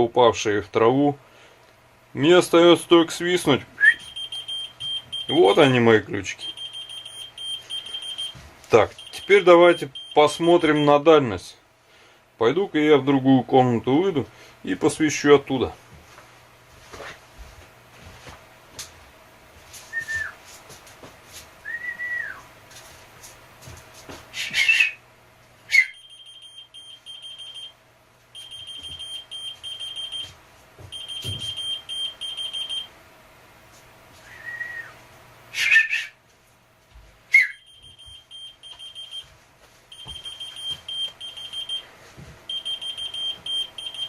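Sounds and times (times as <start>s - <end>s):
loud whistles: 3.8s - 4.2s, 21.7s - 22.4s, 24.4s - 25.0s, 25.7s - 26.0s, 34.2s - 36.2s, 37.3s - 37.7s
keychain beeping rapidly: 4.0s - 5.7s, 6.4s - 8.4s, 9.0s - 10.8s, 26.0s - 27.7s, 28.4s - 30.2s, 37.6s - 39.2s, 39.9s - 41.8s.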